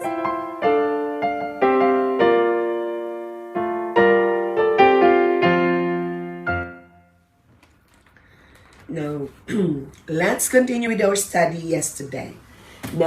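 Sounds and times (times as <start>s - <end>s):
slow piano chords: 0.0s - 7.6s.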